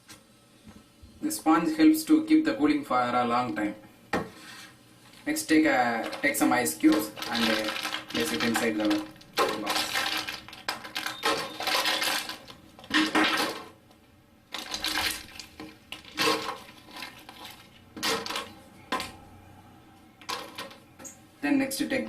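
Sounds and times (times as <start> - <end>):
ice cubes clattering into plastic: 5.9 - 13.7, 14.5 - 18.6, 20.2 - 20.8.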